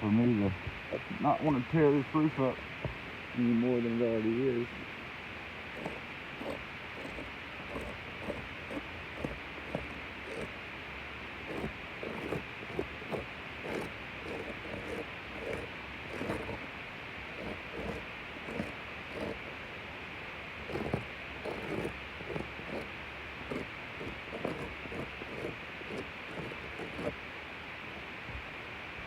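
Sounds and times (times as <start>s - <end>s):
steady background hiss: 0.0s - 29.0s
scuffs and taps on roof shingles: 11.5s - 16.6s.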